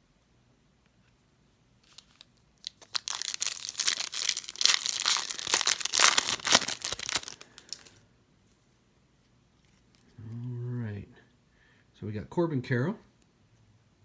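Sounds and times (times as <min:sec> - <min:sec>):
foil wrapper tearing and crinkling: 0:01.9 - 0:08.0.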